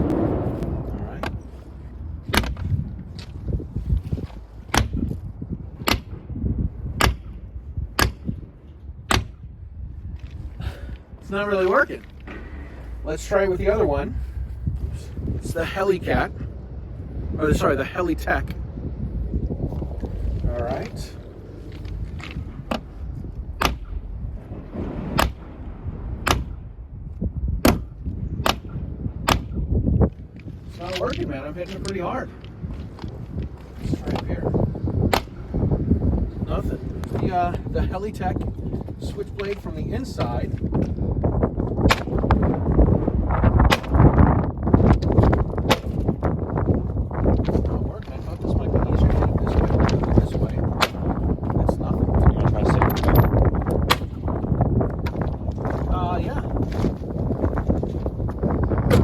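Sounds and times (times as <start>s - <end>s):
knife tip striking car window: 4.7s - 5.0s, 5.8s - 6.1s, 7.0s - 7.3s, 8.0s - 8.3s, 9.1s - 9.4s, 23.6s - 23.9s, 25.2s - 25.4s, 27.6s - 29.6s, 35.1s - 35.4s, 43.7s - 44.0s, 45.7s - 46.0s, 53.9s - 54.2s.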